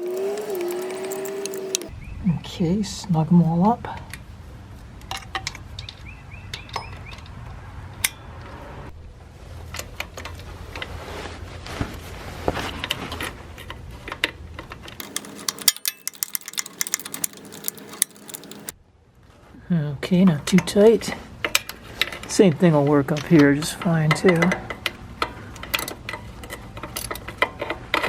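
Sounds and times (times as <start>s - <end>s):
metal hand tools clinking: 0.0s - 1.9s, 15.0s - 18.7s
ratchet clicks: 0.0s - 1.9s, 15.0s - 18.7s.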